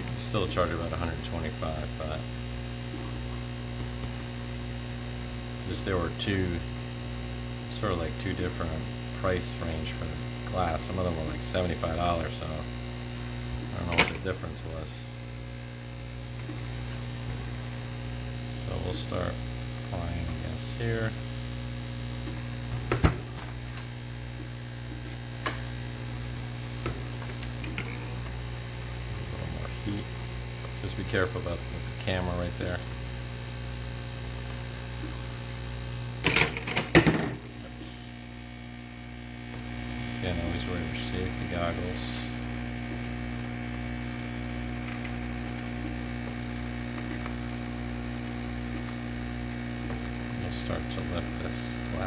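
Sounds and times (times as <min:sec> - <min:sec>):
heat gun humming: 0:21.6 - 0:52.0.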